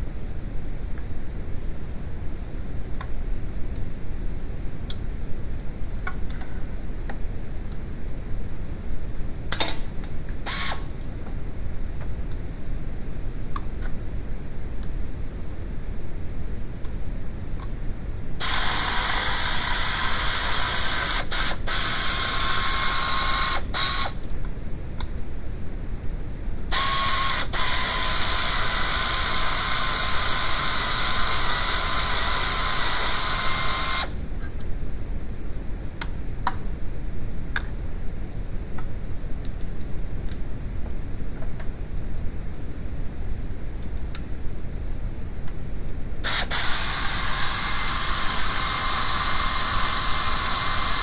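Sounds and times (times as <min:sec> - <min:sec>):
steady low rumble: 0:00.0 - 0:18.5, 0:24.2 - 0:26.8, 0:32.3 - 0:49.9
loud hissing bursts: 0:18.4 - 0:24.2, 0:46.2 - 0:51.0.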